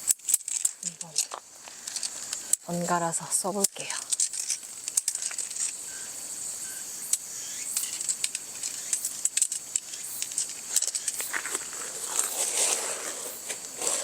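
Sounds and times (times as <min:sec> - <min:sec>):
light clicks and rustles: 0:00.0 - 0:05.8, 0:07.8 - 0:14.0
high-pitched insect chorus: 0:00.0 - 0:14.0.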